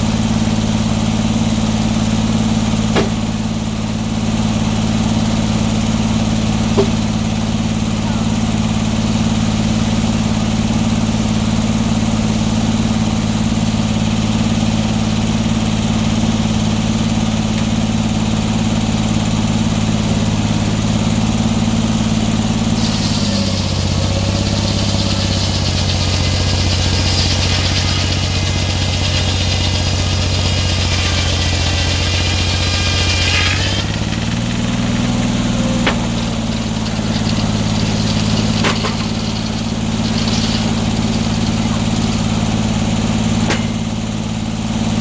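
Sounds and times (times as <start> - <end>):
sawmill engine running: 0.0 - 45.0
saw blade hissing: 22.5 - 44.4.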